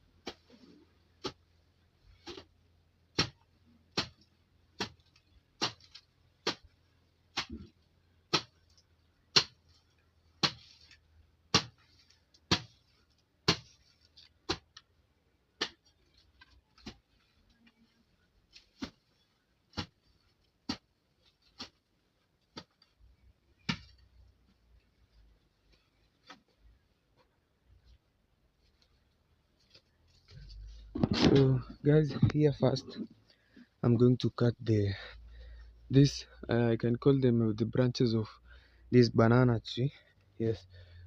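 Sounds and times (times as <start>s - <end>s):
weeding tool chopping soil: 3.1s - 4.2s, 4.8s - 7.7s, 8.3s - 8.7s, 9.3s - 9.6s, 10.4s - 10.8s, 11.5s - 11.8s, 12.4s - 12.8s, 13.4s - 13.8s, 19.7s - 20.0s.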